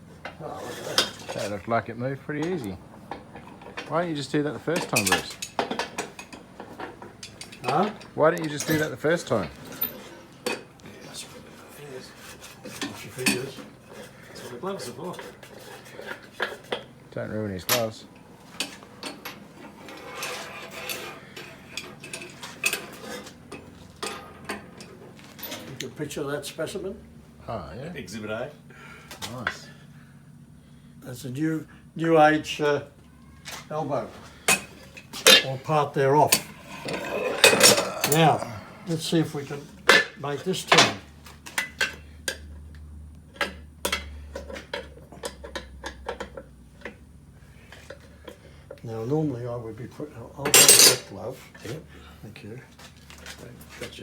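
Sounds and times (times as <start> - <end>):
metal parts clinking and scraping: 2.4 - 10.7, 18.6 - 25.8, 34.5 - 39.3, 50.5 - 51.1
hand tools clicking on metal: 2.4 - 10.8, 34.5 - 39.0.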